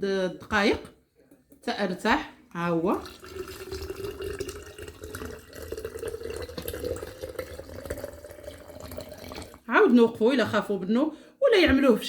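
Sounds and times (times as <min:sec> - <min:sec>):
hot water pouring into glass jar: 0:02.6 - 0:10.4.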